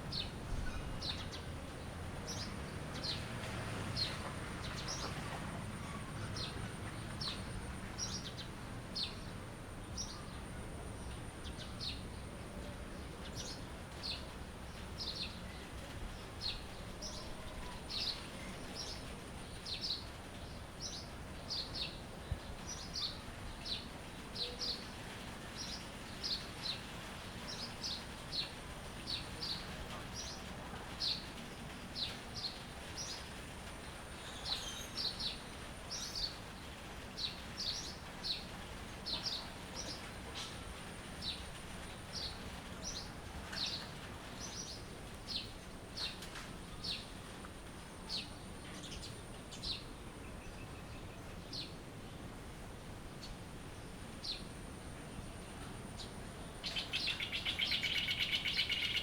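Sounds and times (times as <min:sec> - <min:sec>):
steady background hiss: 0:00.0 - 0:59.0
birds chirping: 0:55.9 - 0:59.0.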